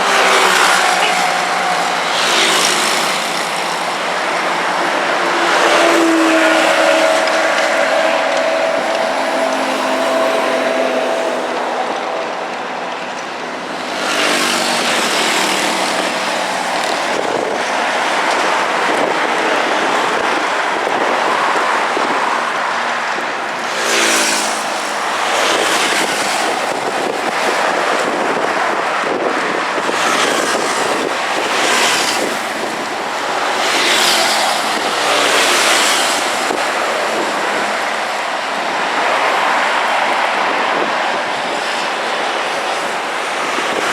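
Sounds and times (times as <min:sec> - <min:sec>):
vehicles driving past: 0:00.0 - 0:43.9.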